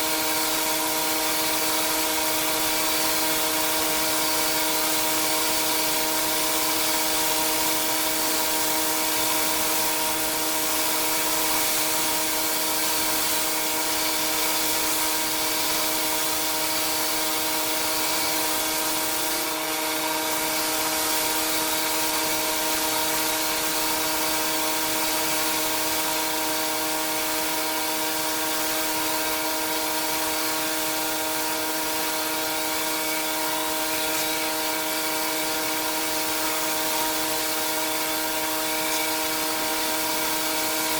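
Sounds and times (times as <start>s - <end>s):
high-pressure water spray hiss: 0.1s - 40.9s.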